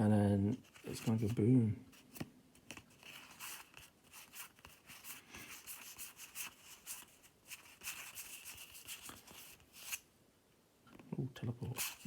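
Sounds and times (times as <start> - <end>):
cards and packaging rustling: 0.6 - 1.4, 2.0 - 10.0, 11.7 - 12.0.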